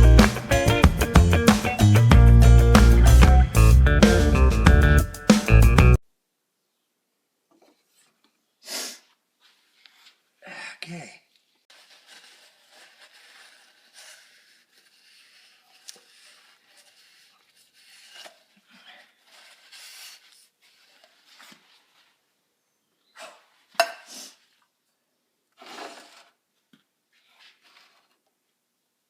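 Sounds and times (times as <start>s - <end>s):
rubbing and scraping handling noise: 7.5s - 10.4s, 11.3s - 22.4s, 25.5s - 28.6s.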